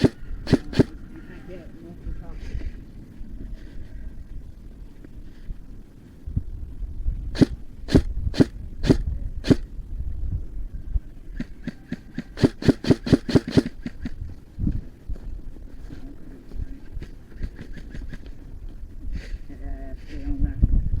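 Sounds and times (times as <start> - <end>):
airsoft gun shots: 0.0 - 0.9, 7.4 - 9.6, 12.4 - 13.8.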